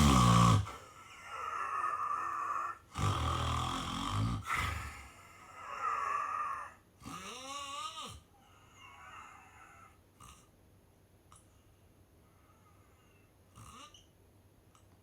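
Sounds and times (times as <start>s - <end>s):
loud rattling snore: 0.0s - 0.8s, 3.0s - 5.0s, 13.6s - 14.0s.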